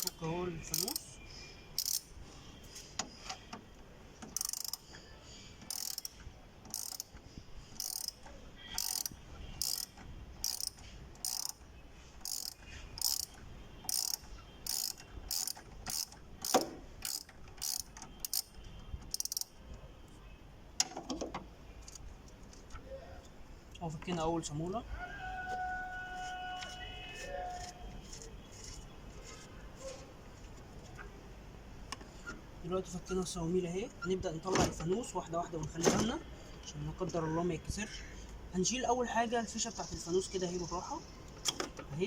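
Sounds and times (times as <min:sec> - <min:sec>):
wrench clicking: 0:00.0 - 0:01.1, 0:01.8 - 0:02.1, 0:04.2 - 0:05.0, 0:05.6 - 0:11.6, 0:12.2 - 0:19.6.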